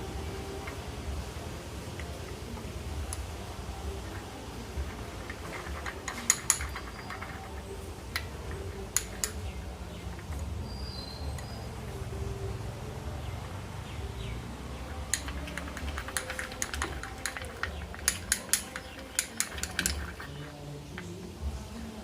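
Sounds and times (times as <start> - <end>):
metal spoon clinking against bowl: 4.9 - 9.6, 15.0 - 21.4.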